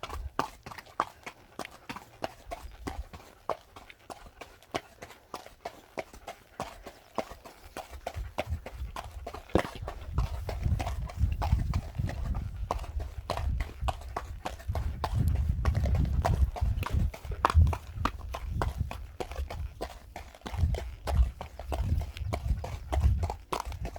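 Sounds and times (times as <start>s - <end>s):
wind rumbling on microphone: 8.0s - 23.9s
footsteps walking: 9.5s - 9.8s.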